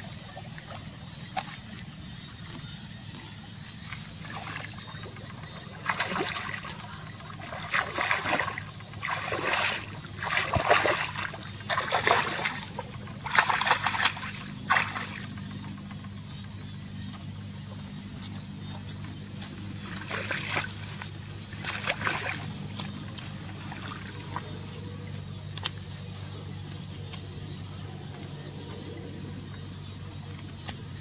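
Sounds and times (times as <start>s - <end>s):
steady low hum: 0.0s - 31.0s
water splashing: 3.8s - 16.4s, 19.3s - 25.9s.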